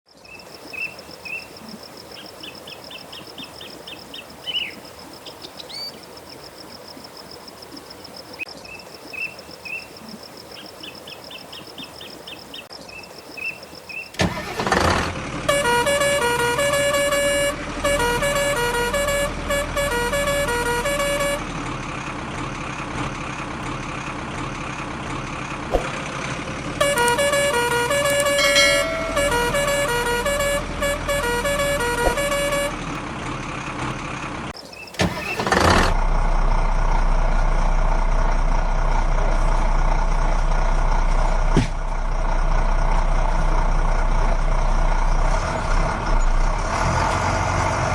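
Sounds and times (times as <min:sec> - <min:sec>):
chirping horn toots: 0:14.0 - 0:21.9, 0:26.7 - 0:33.1
loud multi-note horn tune: 0:15.4 - 0:21.5, 0:26.8 - 0:32.9
faint high beeping: 0:26.9 - 0:32.7.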